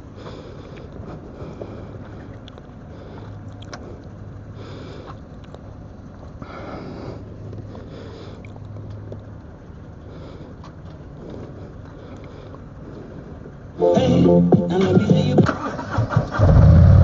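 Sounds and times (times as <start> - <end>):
person breathing: 6.4 - 8.7.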